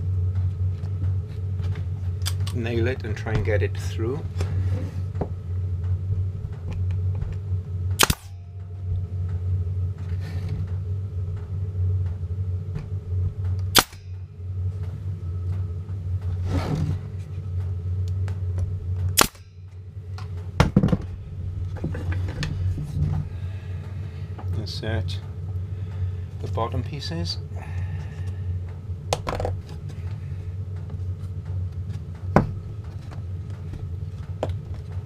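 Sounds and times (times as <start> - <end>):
steady low hum: 0.0 - 35.0
nail gun firing into wood: 8.0 - 8.3, 13.7 - 14.0, 19.2 - 19.4.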